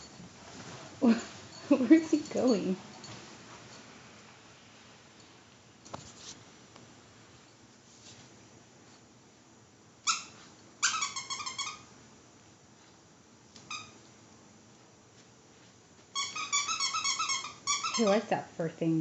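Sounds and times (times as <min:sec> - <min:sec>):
dog's squeaky toy squeaking: 0:10.1 - 0:11.9, 0:16.2 - 0:18.3.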